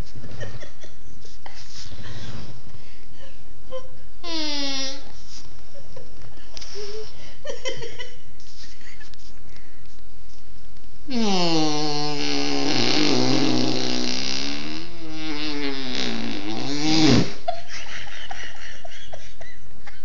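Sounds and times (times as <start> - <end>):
fake fart noise: 4.2 - 5.2, 11.1 - 17.5.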